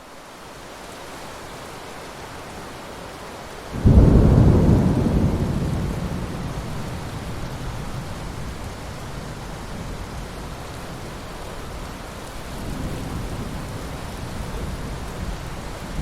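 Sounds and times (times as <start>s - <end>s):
steady rainfall: 0.0s - 16.0s
thunder clap rumbling: 3.8s - 10.6s.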